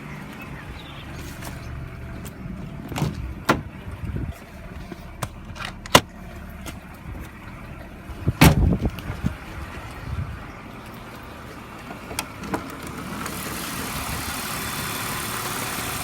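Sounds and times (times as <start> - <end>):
car engine idling: 0.0 - 16.0
engine knocking: 10.8 - 16.0.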